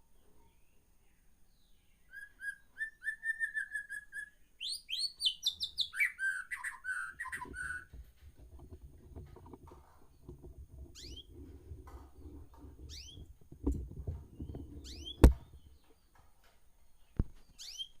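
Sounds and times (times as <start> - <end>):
small birds chirping: 0.0 - 18.0
low rustling: 7.3 - 16.0.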